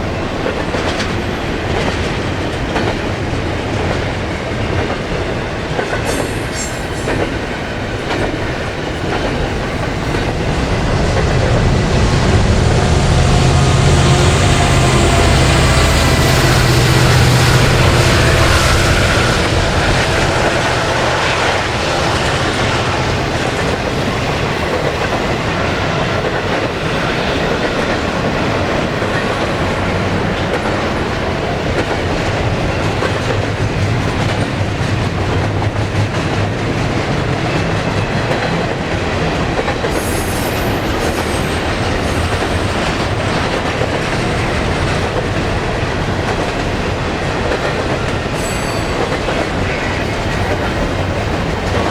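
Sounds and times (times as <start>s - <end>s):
train wheels clickety-clack: 0.0s - 51.9s
locomotive engine: 8.7s - 43.9s
high wheel squeal: 39.9s - 42.3s, 48.3s - 50.1s.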